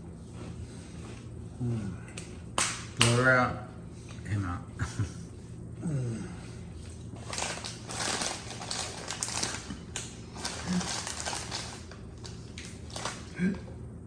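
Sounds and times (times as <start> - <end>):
crunching eating noises: 5.8 - 13.7.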